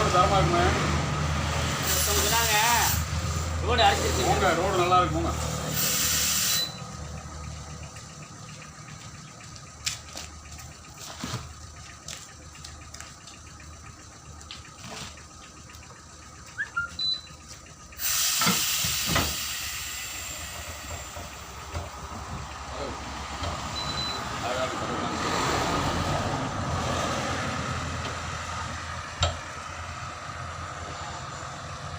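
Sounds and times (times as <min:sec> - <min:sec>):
loud hiss: 0:01.8 - 0:04.2, 0:05.4 - 0:06.6, 0:18.0 - 0:21.5.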